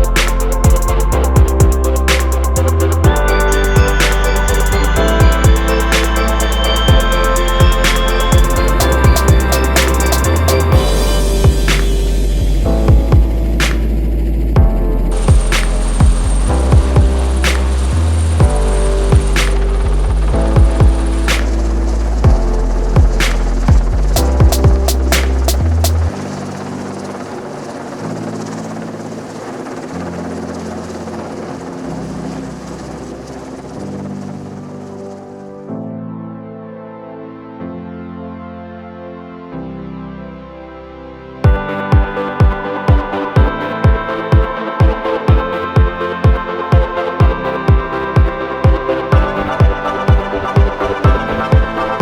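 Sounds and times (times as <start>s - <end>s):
deep kick drum: 0.0s - 6.3s, 6.9s - 14.0s, 14.6s - 17.7s, 18.4s - 21.3s, 22.2s - 26.1s, 41.4s - 51.8s
steady bass line: 0.0s - 26.2s, 41.4s - 52.0s
fast hi-hats: 0.0s - 26.6s, 41.5s - 52.0s
helicopter rotor and turbine: 0.0s - 35.7s, 41.5s - 52.0s.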